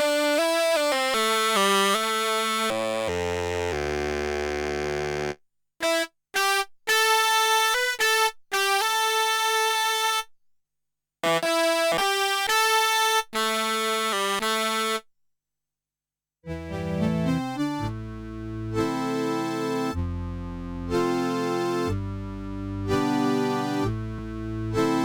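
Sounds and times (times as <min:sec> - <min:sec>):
synthesizer chords: 0:16.5 - 0:25.0.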